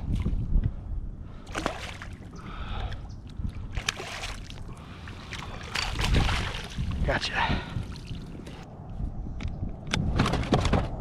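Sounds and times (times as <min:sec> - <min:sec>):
water sloshing against kayak: 0:01.4 - 0:07.0
short sharp splashes: 0:01.5 - 0:02.2.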